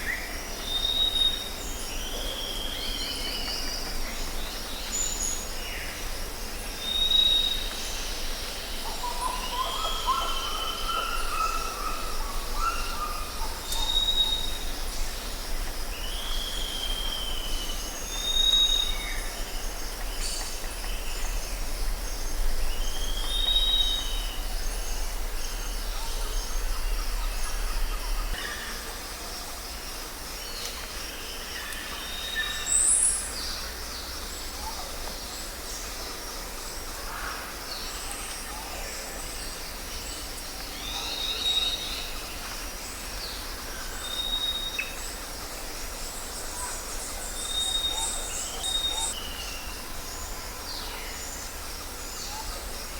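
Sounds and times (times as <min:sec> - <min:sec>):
steady low rumble: 0:19.5 - 0:29.6.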